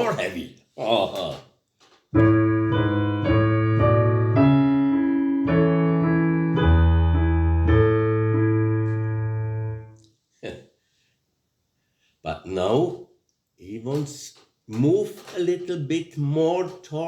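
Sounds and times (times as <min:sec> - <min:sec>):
keyboard playing low chords: 0:02.2 - 0:10.0.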